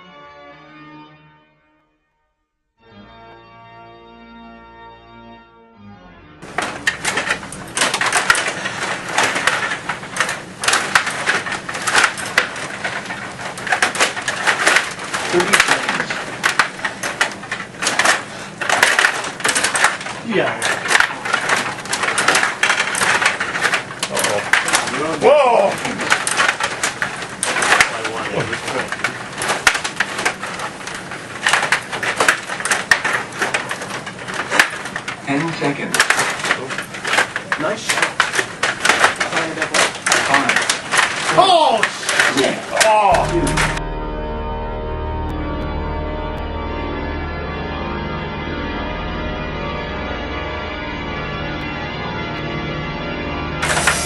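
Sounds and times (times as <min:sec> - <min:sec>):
table hockey clicks and knocks: 0:06.4 - 0:43.8
rods rattling: 0:06.4 - 0:50.2.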